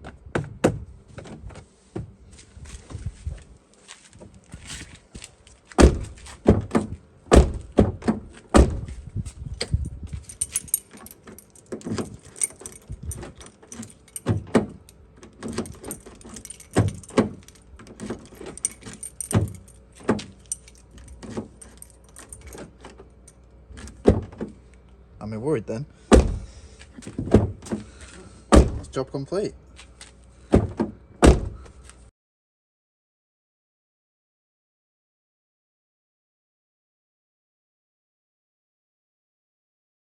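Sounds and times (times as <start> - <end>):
keys jingling: 9.6 - 24.0
car door hardware clicking: 10.4 - 23.0.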